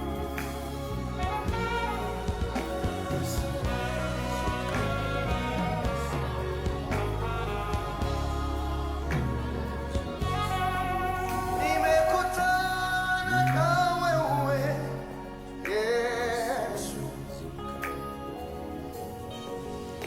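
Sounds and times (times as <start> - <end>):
instrumental backing: 0.0 - 20.0
person singing gospel song: 0.0 - 20.0.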